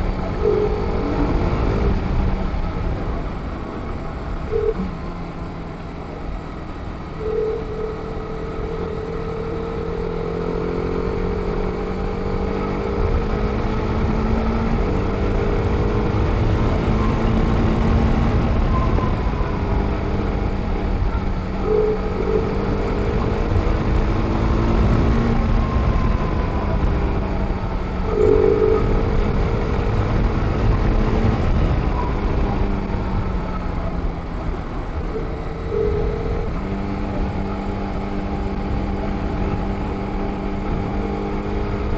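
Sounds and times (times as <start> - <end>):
wind rumble on microphone: 0.0 - 41.9.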